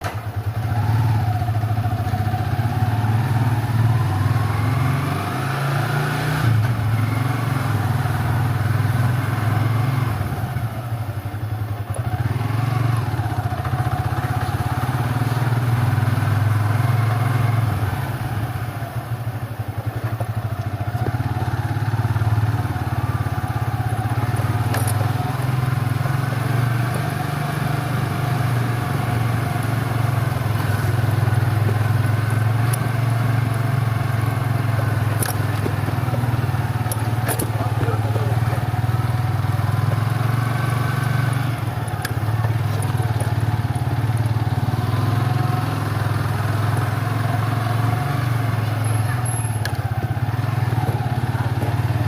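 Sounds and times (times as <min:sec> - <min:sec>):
motorcycle engine running: 0:00.0 - 0:52.0.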